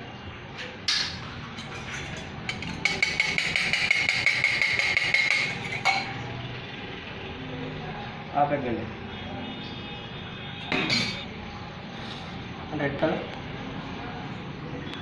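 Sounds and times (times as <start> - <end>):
rapid clattering with ringing tone: 1.2 - 6.2
knocks on a bowl: 2.6 - 6.1.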